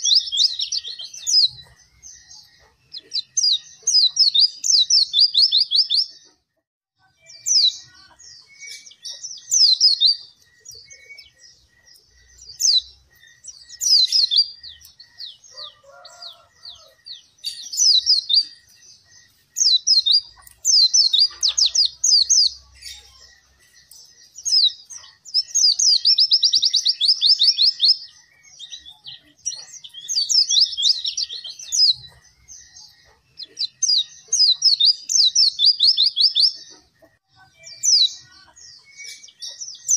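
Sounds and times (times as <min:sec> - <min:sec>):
bird singing chattering trills: 0:00.0 - 0:39.9.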